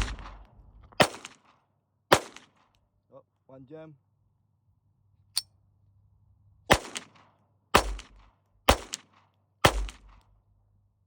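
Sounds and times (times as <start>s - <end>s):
pistol shots with ringing tail: 6.7s - 7.2s, 7.8s - 10.2s.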